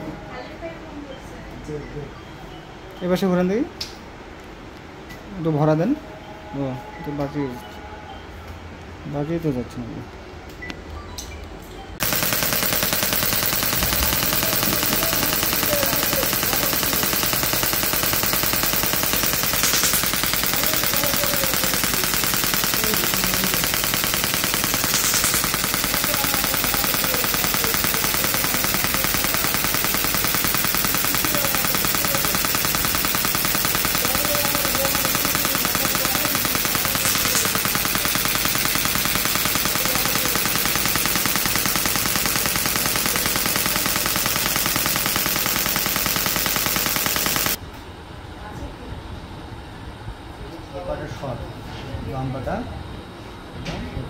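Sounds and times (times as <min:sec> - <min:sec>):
percussion massager hammering: 0:12.0 - 0:47.6.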